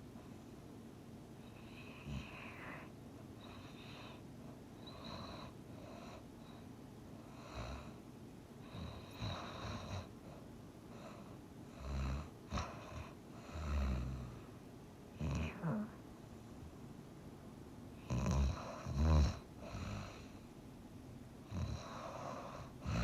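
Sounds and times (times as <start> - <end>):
person snoring: 21.5 - 23.0.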